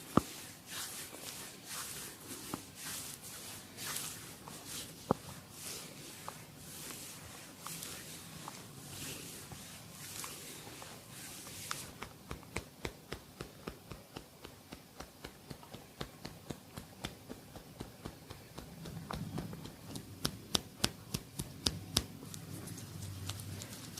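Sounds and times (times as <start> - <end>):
soft rubbing hiss: 0.0 - 23.9
hands tapping on a head: 11.7 - 22.4.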